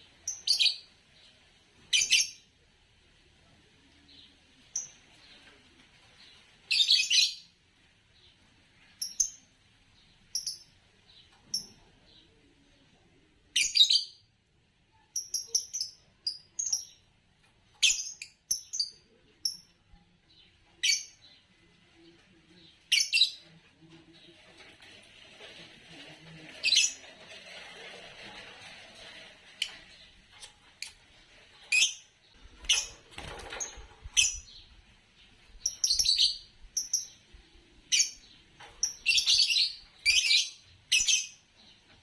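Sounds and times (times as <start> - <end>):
lovebirds chirping: 6.2 - 12.4, 29.5 - 42.0.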